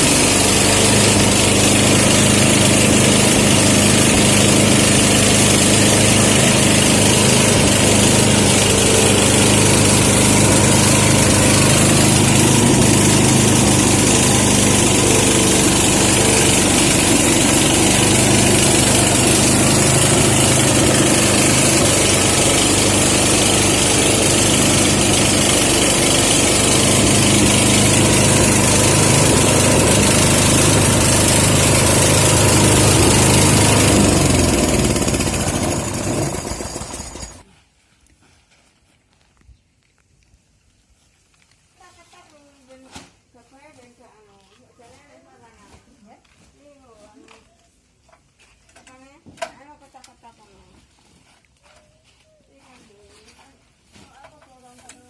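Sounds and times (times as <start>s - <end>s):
small engine droning: 0.0s - 37.4s.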